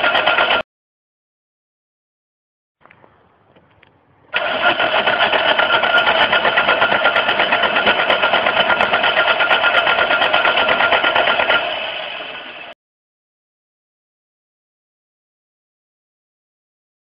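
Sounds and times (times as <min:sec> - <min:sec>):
engine cranking: 0:00.0 - 0:00.6, 0:04.3 - 0:12.8
starter motor clicks: 0:00.0 - 0:00.6, 0:03.6 - 0:12.8.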